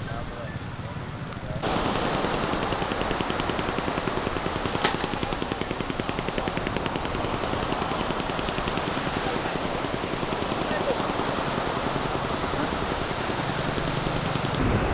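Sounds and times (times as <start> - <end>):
engine running: 0.0 - 14.9
sharp click: 4.8 - 5.3.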